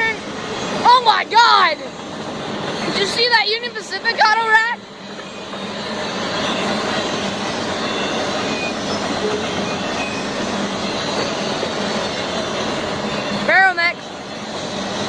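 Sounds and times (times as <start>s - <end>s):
freight train rolling past: 0.0s - 15.0s.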